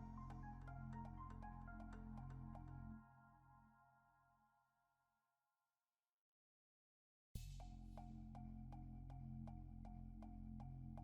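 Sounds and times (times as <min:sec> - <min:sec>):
background music: 0:00.0 - 0:04.2.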